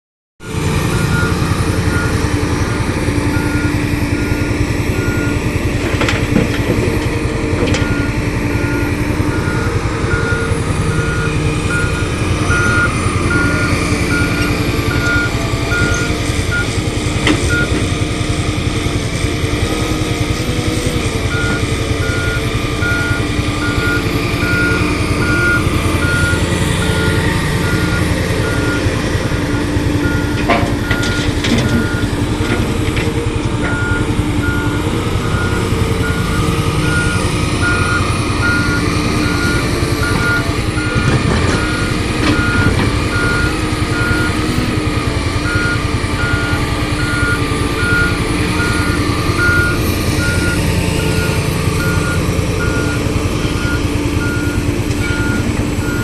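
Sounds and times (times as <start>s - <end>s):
diesel engine running: 0.4s - 56.0s
backup alarm beeping: 7.6s - 16.7s, 21.3s - 33.0s.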